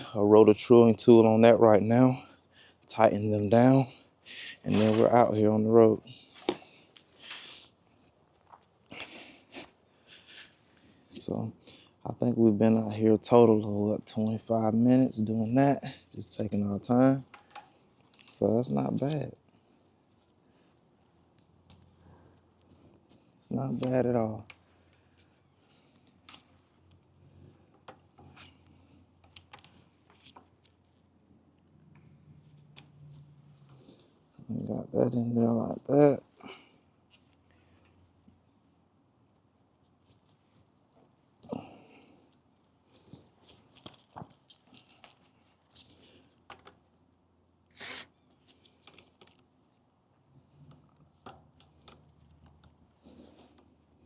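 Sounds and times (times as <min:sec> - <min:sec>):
small tools clicking and tapping: 0:17.3 - 0:18.4, 0:29.2 - 0:30.4.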